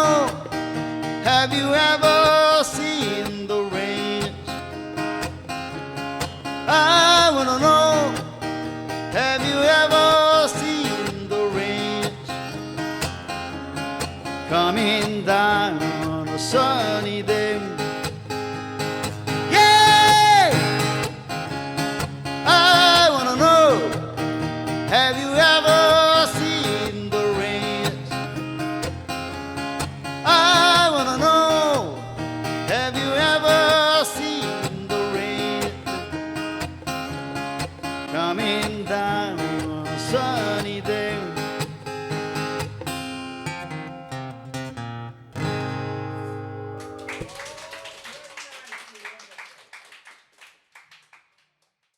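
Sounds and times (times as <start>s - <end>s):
person singing: 0.0s - 4.7s, 6.6s - 12.8s, 14.4s - 18.0s, 19.4s - 21.2s, 22.4s - 28.7s, 30.2s - 36.2s, 38.1s - 41.6s
acoustic guitar strumming: 0.0s - 47.3s.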